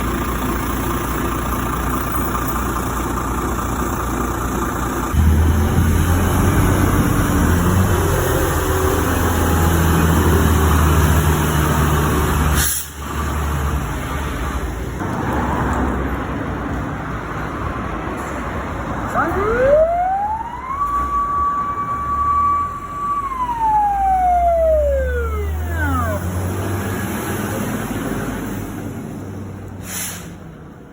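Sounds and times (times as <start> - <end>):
fire truck engine running: 0.0 - 30.9
air brake hiss: 12.6 - 13.0, 29.8 - 30.5.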